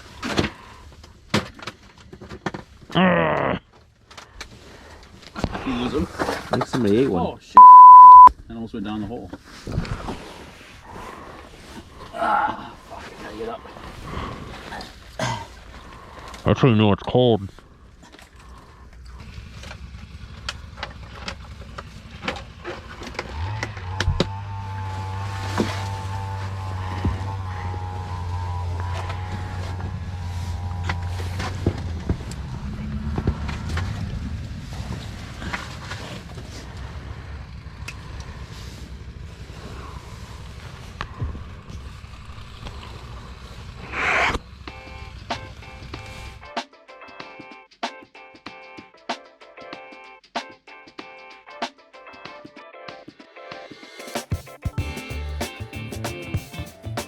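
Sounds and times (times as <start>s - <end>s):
motor running steadily: 23.3s - 31.1s
loud rushing noise: 43.8s - 44.4s
music: 44.8s - 57.0s.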